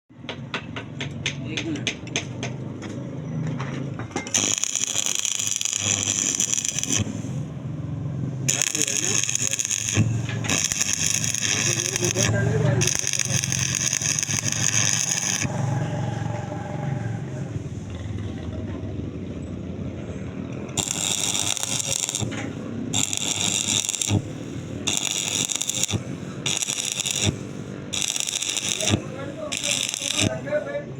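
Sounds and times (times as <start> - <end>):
welding arc sizzling: 4.3 - 7.6, 8.5 - 16.2, 20.7 - 30.8
low rumble: 9.4 - 24.8.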